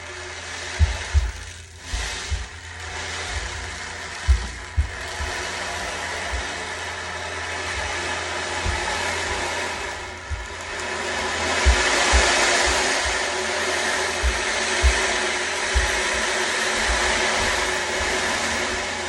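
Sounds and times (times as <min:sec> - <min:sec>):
ocean drum beads washing: 0:00.0 - 0:19.0
children running upstairs thumps: 0:00.8 - 0:19.0.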